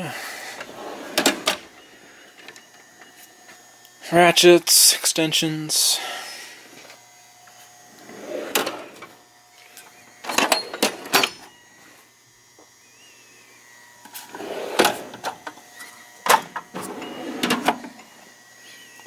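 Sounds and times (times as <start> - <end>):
metal drawers opening and shutting: 0.6 - 1.7, 8.0 - 9.1, 10.3 - 11.5, 14.2 - 15.4, 16.2 - 18.1.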